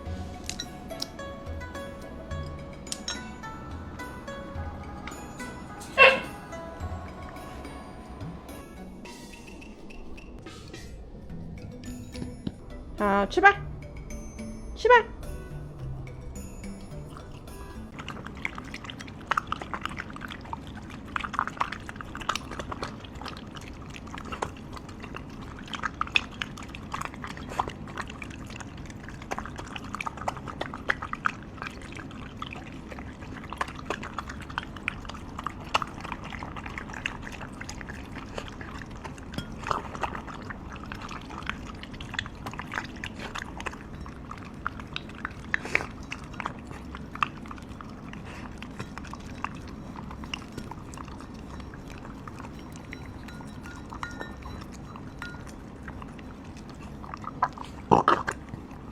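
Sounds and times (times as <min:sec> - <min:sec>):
dog chewing and lapping food: 0:00.0 - 0:10.5, 0:11.2 - 0:12.8, 0:15.3 - 0:58.9.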